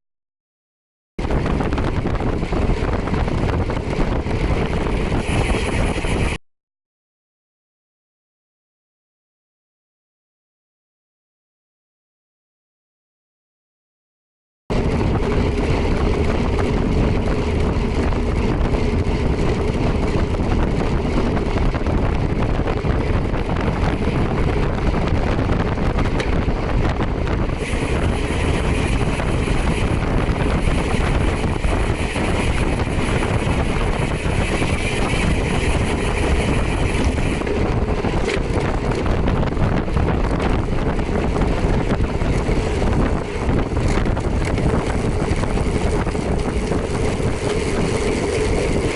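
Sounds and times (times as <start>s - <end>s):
wind buffeting microphone: 1.2s - 6.4s, 14.7s - 48.9s
motorcycle engine: 14.7s - 48.9s.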